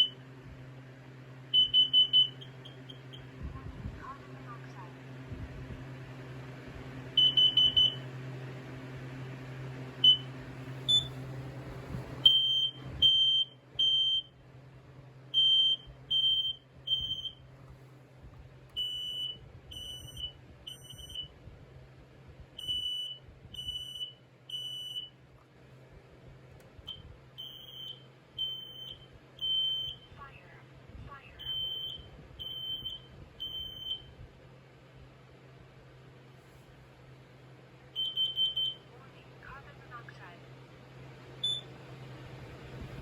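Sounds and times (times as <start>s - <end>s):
smoke alarm high-pitched beeps: 0.0s - 0.2s, 1.5s - 3.3s, 7.1s - 8.0s, 10.0s - 11.2s, 12.2s - 14.4s, 15.3s - 17.4s, 18.8s - 21.4s, 22.6s - 25.2s, 26.9s - 30.3s, 31.3s - 34.2s, 38.0s - 38.9s, 41.4s - 41.7s
smoke alarm short chirps: 1.6s - 3.3s, 10.9s - 11.2s, 15.4s - 17.4s, 18.8s - 21.4s, 22.6s - 25.1s, 26.9s - 30.1s, 31.4s - 34.2s, 38.0s - 38.8s, 41.4s - 41.7s.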